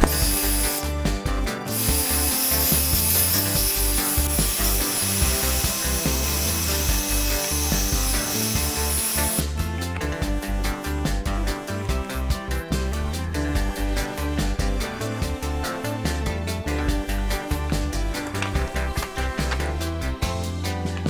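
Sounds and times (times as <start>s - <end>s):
heat gun blowing hot air: 0.0s - 9.6s
background music with beat: 0.0s - 21.0s.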